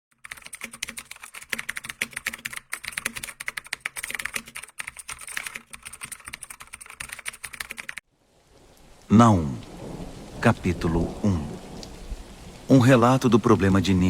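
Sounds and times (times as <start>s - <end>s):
typing on computer keyboard: 0.1s - 8.0s.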